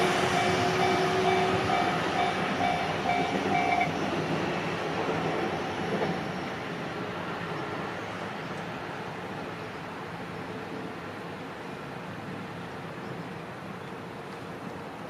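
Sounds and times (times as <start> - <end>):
level-crossing warning bell: 0.0 - 4.1
passing train: 0.0 - 15.0.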